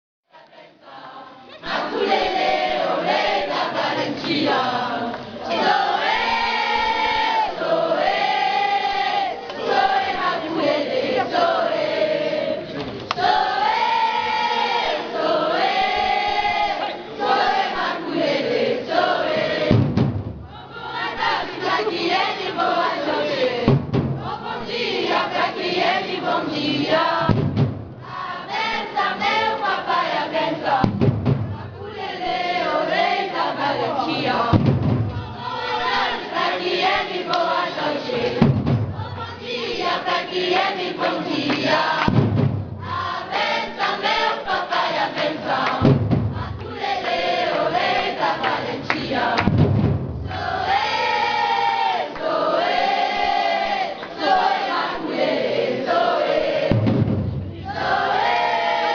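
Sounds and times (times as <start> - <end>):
group singing: 0.3 - 58.9
deep drum hits: 19.6 - 20.7, 23.6 - 24.4, 27.2 - 28.1, 30.8 - 31.8, 34.5 - 35.5, 38.4 - 39.3, 42.0 - 43.0, 45.8 - 46.8, 49.4 - 50.8, 56.7 - 57.7.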